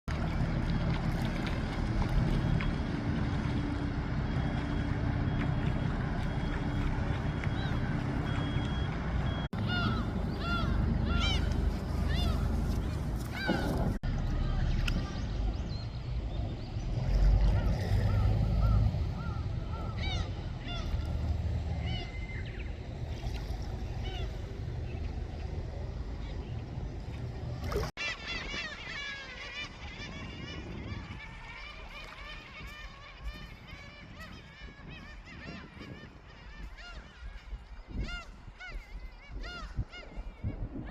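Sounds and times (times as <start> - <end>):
boat engine drone: 0.1 - 37.8
faint gull calls: 3.7 - 15.4, 17.2 - 22.7, 27.7 - 40.9
wind on microphone: 9.7 - 40.9.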